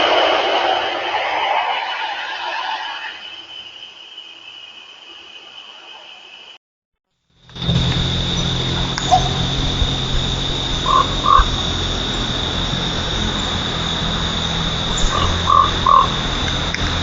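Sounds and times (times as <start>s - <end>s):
steady high whine: 0.0s - 4.4s, 7.2s - 17.0s
low hum: 7.2s - 17.0s.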